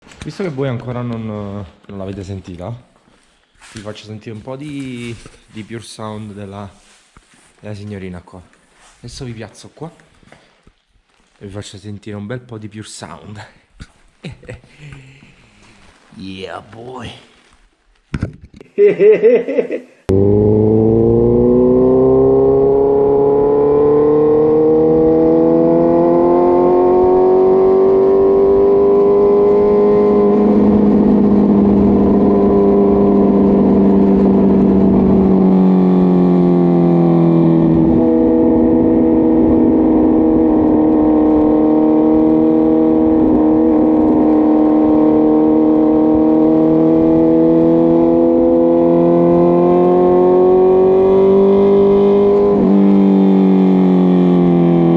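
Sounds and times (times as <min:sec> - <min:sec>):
motorcycle engine at raised revs: 0:20.1 - 0:54.9.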